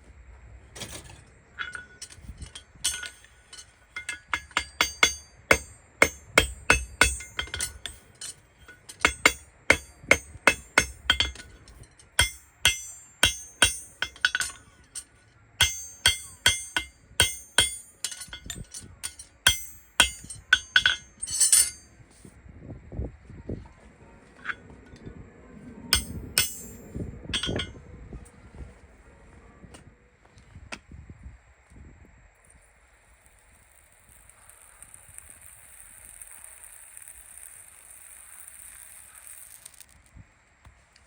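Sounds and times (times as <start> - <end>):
hammer striking metal: 1.6 - 21.9, 25.9 - 27.8.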